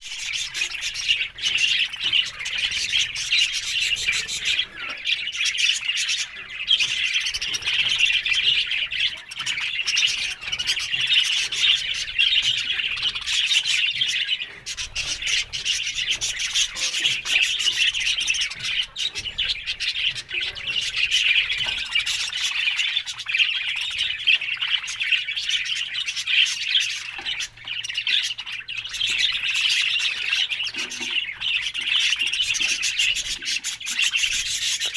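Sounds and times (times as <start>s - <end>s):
budgerigars chattering and chirping: 0.0s - 34.9s.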